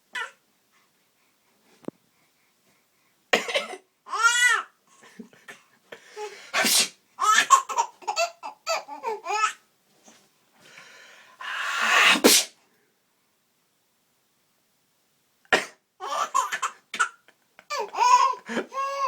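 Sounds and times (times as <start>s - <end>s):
sharp cough: 3.4s - 3.8s, 6.6s - 7.6s
man sneezing: 6.6s - 7.0s, 11.5s - 12.5s
baby laughing: 7.2s - 9.6s, 16.0s - 19.0s.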